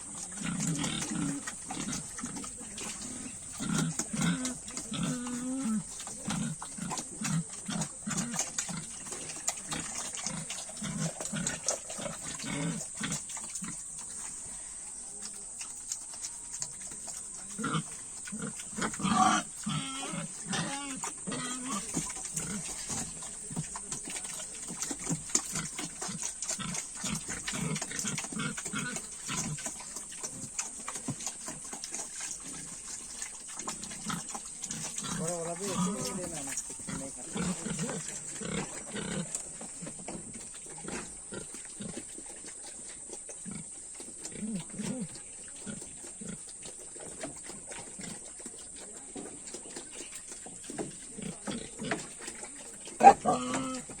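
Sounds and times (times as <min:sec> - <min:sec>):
pigs grunting: 0:00.0 - 0:54.0
clicks and smacks of eating: 0:15.2 - 0:19.8, 0:20.6 - 0:54.0.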